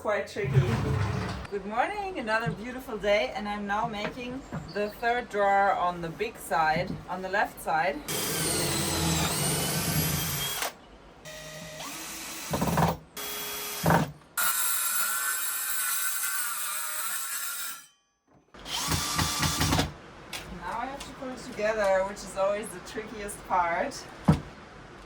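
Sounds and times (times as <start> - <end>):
power tools running: 8.1 - 17.1, 18.6 - 20.0.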